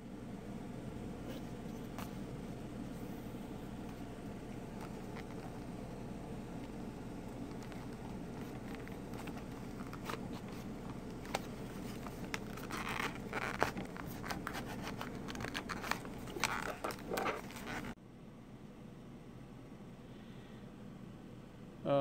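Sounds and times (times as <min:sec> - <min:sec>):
scratchy sounds: 0:01.2 - 0:05.8, 0:06.6 - 0:18.0.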